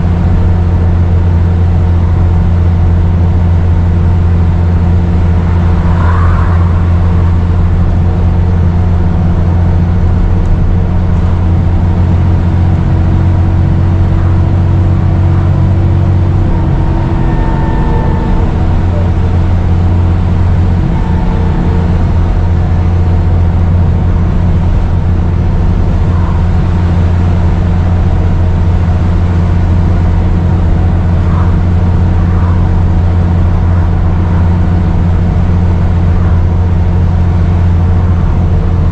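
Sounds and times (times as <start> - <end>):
bus engine droning: 0.0 - 38.9
turbo whistle: 5.0 - 7.8, 16.2 - 23.0.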